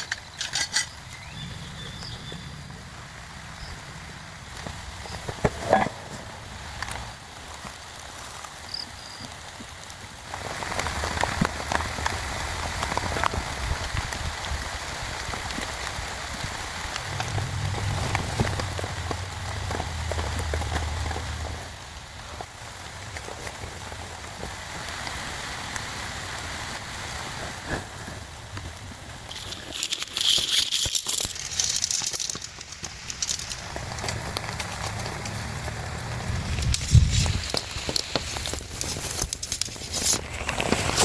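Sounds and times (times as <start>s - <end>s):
heavy rain hissing: 1.5s - 41.0s
low rumble: 16.6s - 21.8s.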